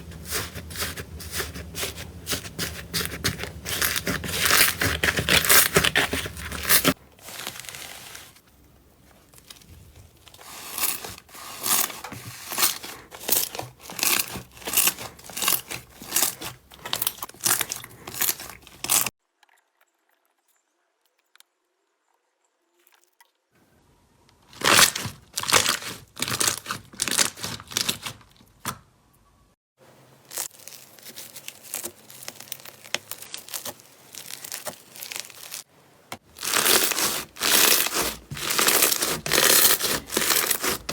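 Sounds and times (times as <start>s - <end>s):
slime squeezed crackling: 0.1s - 7.7s, 30.3s - 35.7s, 36.3s - 40.9s.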